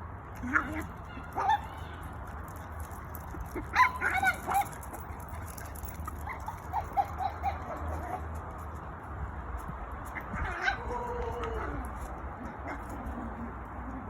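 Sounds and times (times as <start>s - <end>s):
small dogs yipping and whining: 0.4s - 2.1s, 3.6s - 8.3s, 10.2s - 14.0s.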